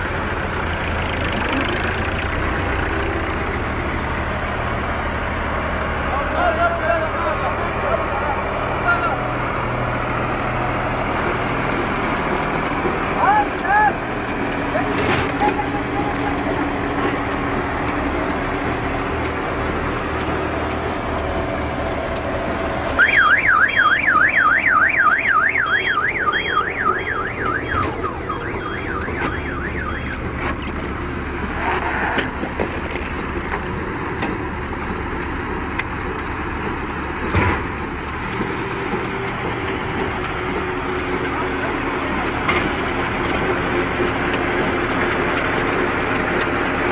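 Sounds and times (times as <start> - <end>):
baling machinery running: 0.0 - 46.9
electronic warning alarm wailing: 23.0 - 30.3.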